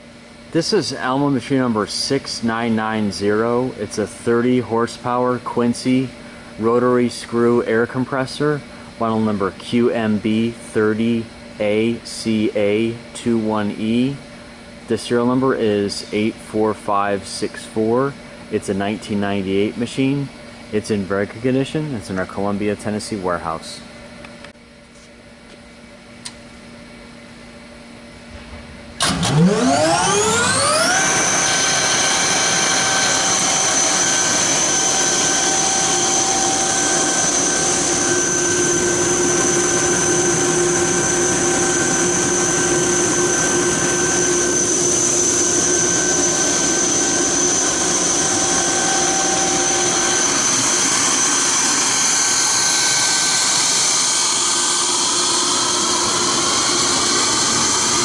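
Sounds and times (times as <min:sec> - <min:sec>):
air compressor motor whining: 0:00.0 - 0:21.9, 0:28.0 - 0:58.0
loud rushing air noise: 0:28.2 - 0:58.0.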